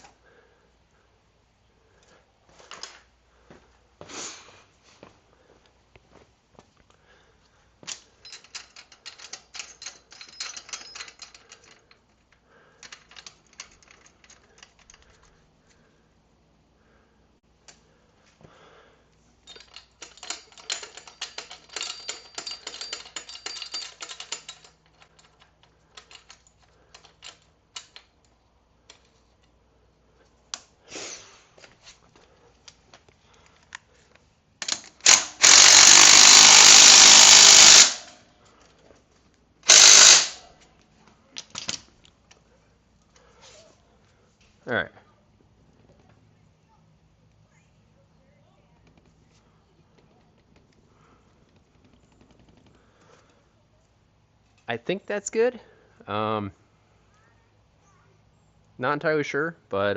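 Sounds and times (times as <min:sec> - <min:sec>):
ratchet wrench clicking: 0:19.5 - 0:28.1, 0:34.6 - 0:38.2, 0:39.7 - 0:40.4
power tool running: 0:35.0 - 0:38.2, 0:39.7 - 0:40.4.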